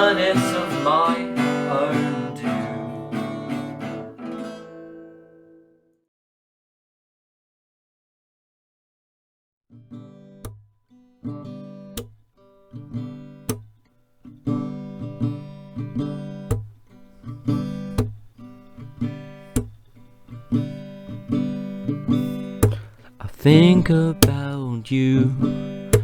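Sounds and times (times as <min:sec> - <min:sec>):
acoustic guitar strumming chords: 0:00.0 - 0:06.0, 0:11.2 - 0:26.0.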